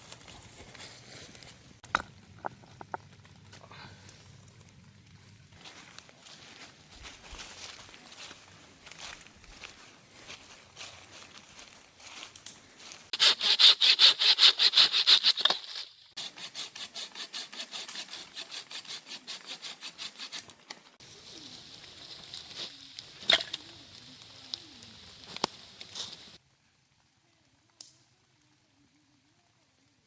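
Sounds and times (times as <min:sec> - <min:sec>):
hand saw cutting wood: 0:13.1 - 0:20.6
faint hiss: 0:21.0 - 0:30.0.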